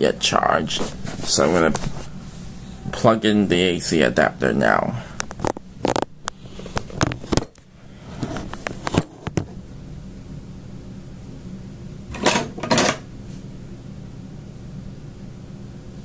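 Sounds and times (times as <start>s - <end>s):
steady low hum: 0.0s - 16.0s
rustling scrapes: 0.7s - 2.8s, 8.0s - 9.2s.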